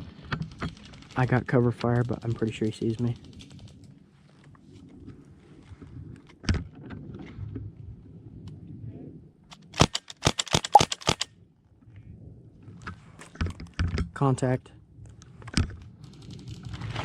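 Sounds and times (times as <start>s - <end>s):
airsoft gun shots: 9.8s - 11.3s.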